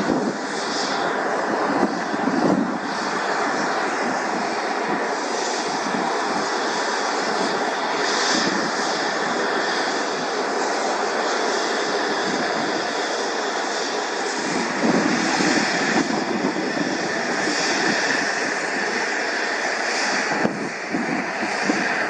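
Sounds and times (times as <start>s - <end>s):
aircraft engine rushing: 0.0s - 22.0s.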